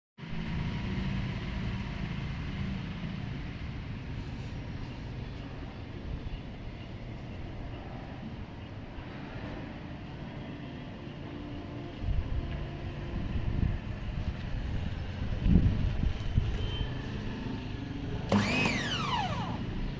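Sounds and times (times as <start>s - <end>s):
pressure washer motor hum: 18.3s - 19.9s.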